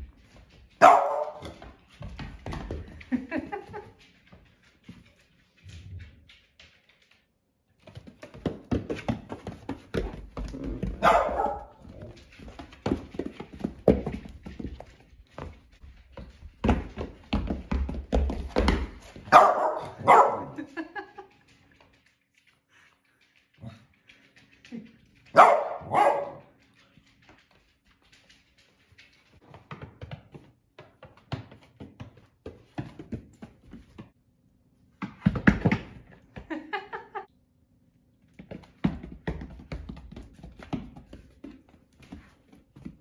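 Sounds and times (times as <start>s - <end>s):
goat hooves tapping on hard floor: 0.0s - 34.2s, 34.8s - 37.3s, 38.2s - 43.0s
dog barking: 0.8s - 1.6s, 11.0s - 11.9s, 19.3s - 20.6s, 25.4s - 26.5s.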